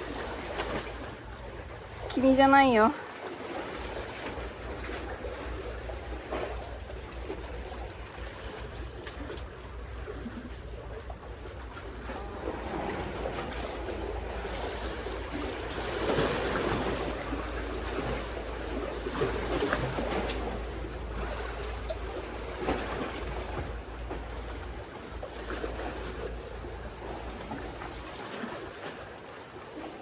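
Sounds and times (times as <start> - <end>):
sea water sloshing: 0.0 - 30.0.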